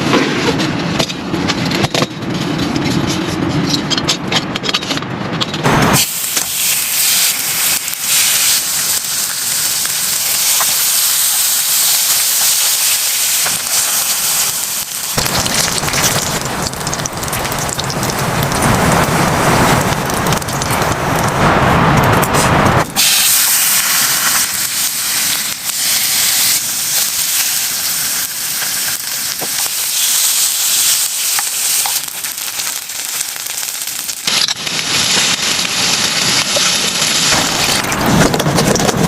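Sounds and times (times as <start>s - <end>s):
heavy rain hissing: 5.7s - 38.9s
raindrops clicking close by: 13.4s - 21.4s.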